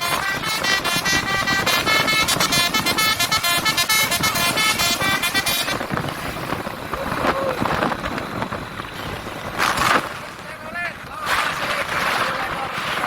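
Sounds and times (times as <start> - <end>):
musical multi-tone air horn: 0.0 - 6.7
road noise: 0.0 - 13.0.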